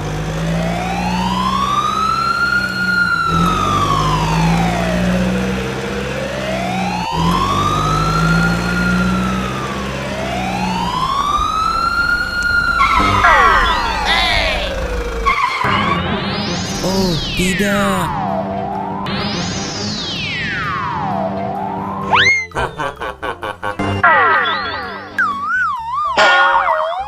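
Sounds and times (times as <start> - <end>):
emergency siren wailing: 0.4 - 15.2.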